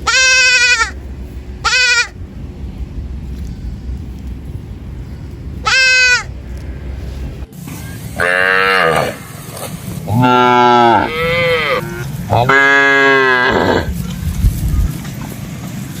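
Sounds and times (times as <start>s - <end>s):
cow mooing: 8.2s - 9.3s, 10.1s - 13.9s.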